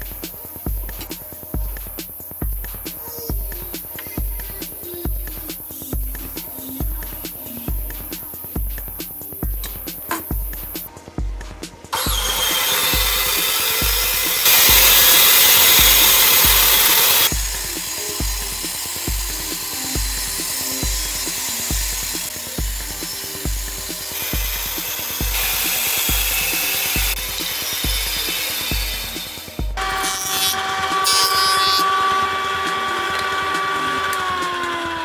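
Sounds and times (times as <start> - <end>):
background music with beat: 0.0 - 35.0
power tool cutting wood: 12.0 - 35.0.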